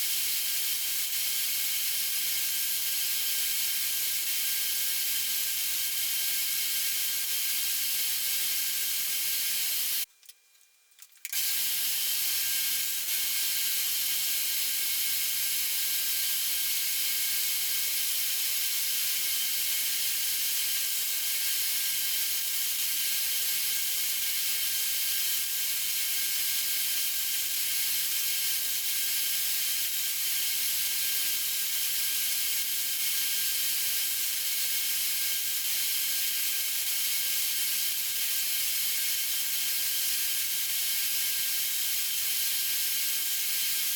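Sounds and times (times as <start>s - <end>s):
bandsaw cutting: 11.3s - 17.6s.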